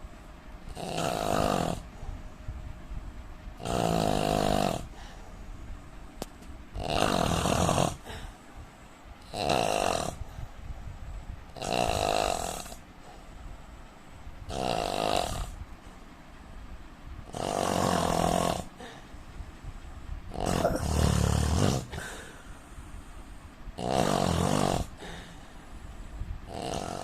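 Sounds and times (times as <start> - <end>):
man snoring: 0.7 - 1.8, 3.6 - 5.0, 6.8 - 8.2, 9.2 - 10.3, 11.6 - 12.8, 14.5 - 15.6, 17.3 - 19.0, 20.3 - 22.4, 23.8 - 25.4, 26.5 - 27.0.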